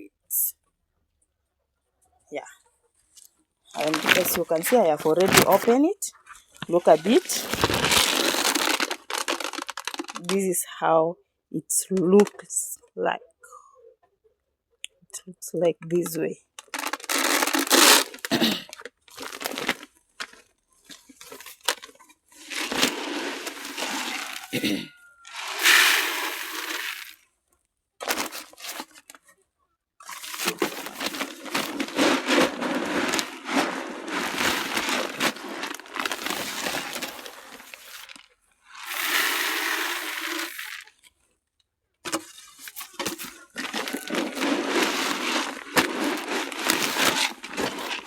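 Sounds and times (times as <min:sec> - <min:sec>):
feed pellets clattering: 0:03.8 - 0:05.8, 0:06.6 - 0:10.4, 0:16.6 - 0:18.4, 0:19.1 - 0:19.9, 0:21.2 - 0:27.2, 0:30.0 - 0:40.9, 0:42.1 - 0:48.0.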